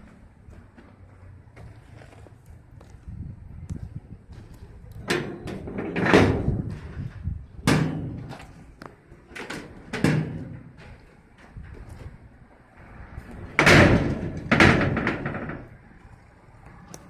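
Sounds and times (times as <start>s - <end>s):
door banging shut: 5.1s - 6.7s, 7.6s - 8.5s, 9.4s - 10.8s, 13.5s - 15.7s.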